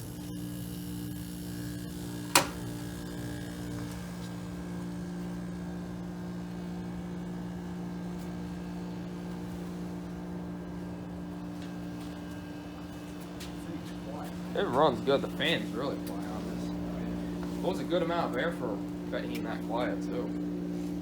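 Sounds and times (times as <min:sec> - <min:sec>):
air conditioner humming: 0:00.0 - 0:21.0
control switch click: 0:02.2 - 0:02.7.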